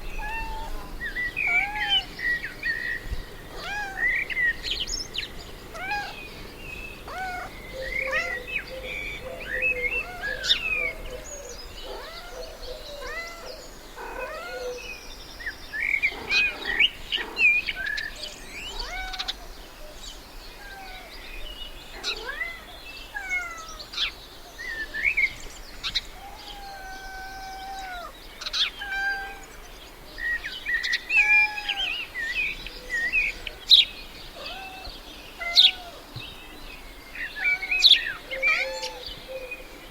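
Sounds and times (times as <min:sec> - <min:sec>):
birds chirping and whistling: 0:00.0 - 0:19.3.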